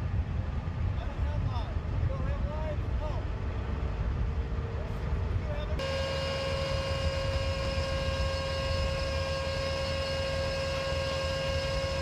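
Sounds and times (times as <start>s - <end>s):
heavy vehicle engine rumbling: 0.0s - 12.0s
high-pitched engine whine: 2.8s - 12.0s.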